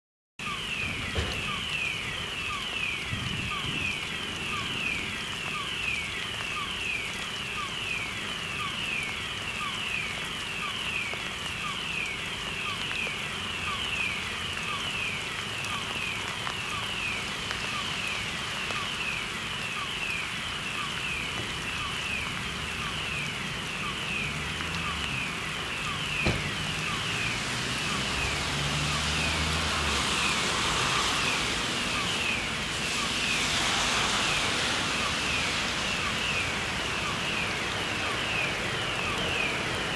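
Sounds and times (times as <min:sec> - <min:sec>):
fire alarm downward sweeping tone: 0:00.4 - 0:11.2.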